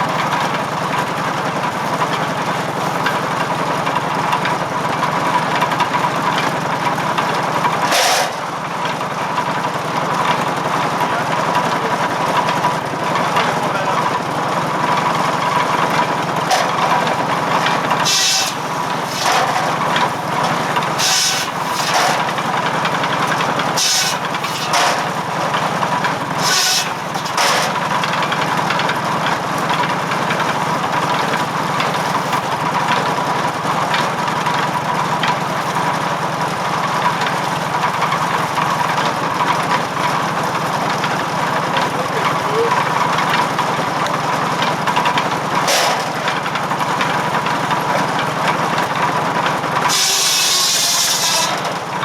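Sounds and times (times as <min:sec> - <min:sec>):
saw cutting wood: 0:00.0 - 0:04.5, 0:07.2 - 0:08.6, 0:15.3 - 0:42.9, 0:45.5 - 0:46.6, 0:49.5 - 0:52.0
tractor engine running: 0:00.0 - 0:52.0.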